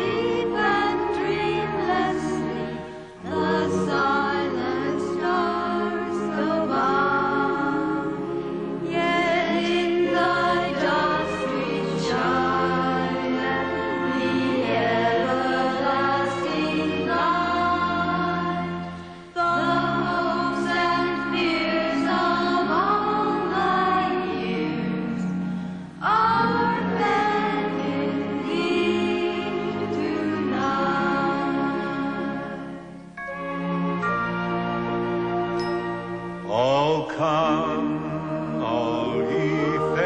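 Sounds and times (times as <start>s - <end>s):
voices singing carols with music: 0.0s - 40.0s.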